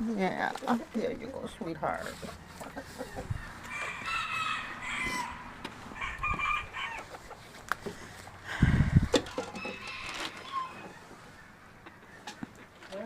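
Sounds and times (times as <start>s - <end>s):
rooster crowing: 3.6s - 7.2s, 8.7s - 11.0s.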